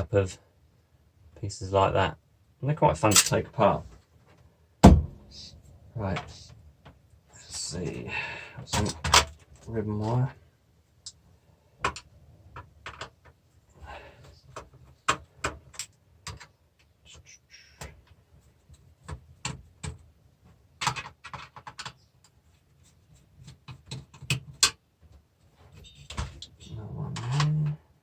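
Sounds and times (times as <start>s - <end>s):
hands clicking and rattling parts: 8.6s - 10.3s, 11.8s - 17.2s, 17.8s - 27.8s.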